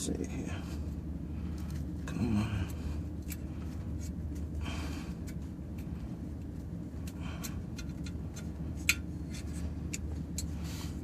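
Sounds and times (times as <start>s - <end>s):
vending machine fan humming: 0.0s - 11.0s.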